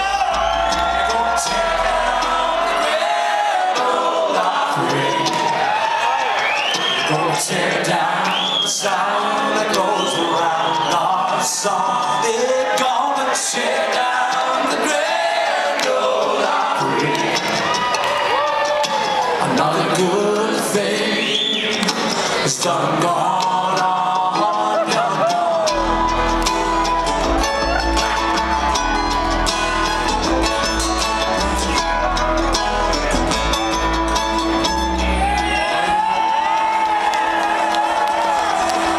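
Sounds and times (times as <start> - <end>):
upright bass: 0.0 - 3.2, 22.9 - 36.1
person singing: 0.0 - 5.6, 7.0 - 18.5, 19.1 - 38.9
bluegrass string band playing: 0.0 - 18.4, 21.8 - 38.9
banjo: 0.0 - 18.7, 21.8 - 36.6
acoustic guitar: 0.0 - 38.9
mandolin: 21.8 - 36.6.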